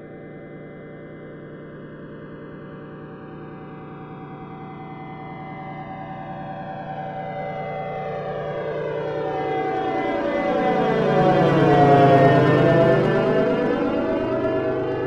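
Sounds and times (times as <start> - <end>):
droning whistling flyover: 4.2 - 15.0.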